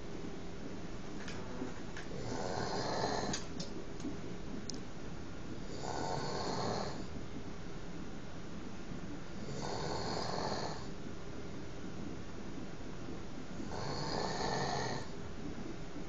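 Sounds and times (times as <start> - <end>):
man snoring: 2.2 - 3.4, 5.7 - 7.1, 9.4 - 10.9, 13.6 - 15.1.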